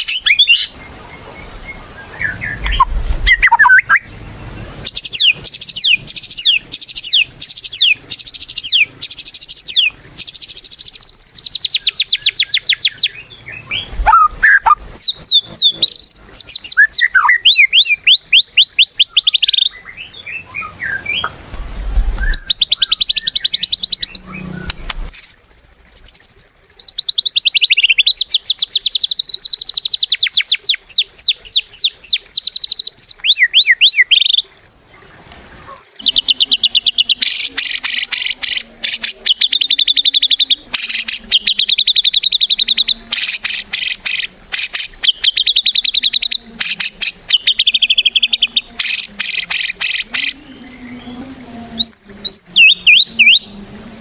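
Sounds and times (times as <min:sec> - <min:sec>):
bird singing rapid trills: 0:00.0 - 0:21.3, 0:22.2 - 0:53.6.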